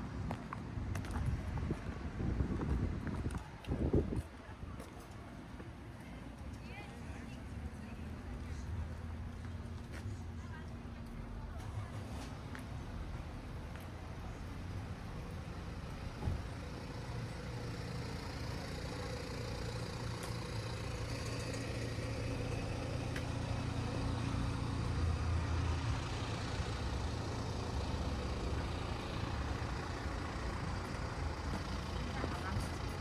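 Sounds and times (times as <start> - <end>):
vehicle engine humming: 5.2 - 33.0.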